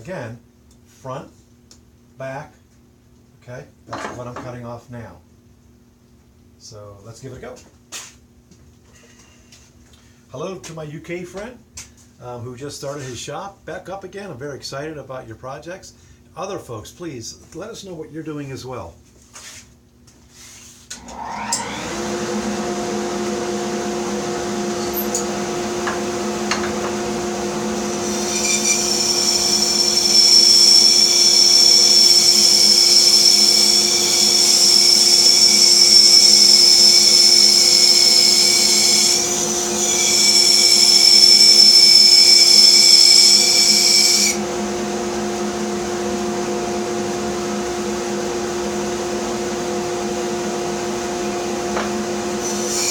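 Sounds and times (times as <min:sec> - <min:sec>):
bandsaw motor hum: 0:21.0 - 0:52.9
blade cutting wood whine: 0:21.0 - 0:52.9.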